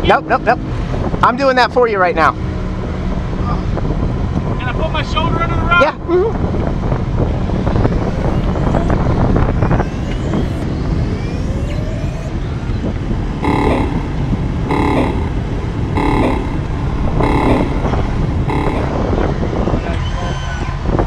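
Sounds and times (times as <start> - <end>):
wind rumbling on microphone: 0.0 - 21.0
short beeps: 13.4 - 15.4, 16.0 - 19.0.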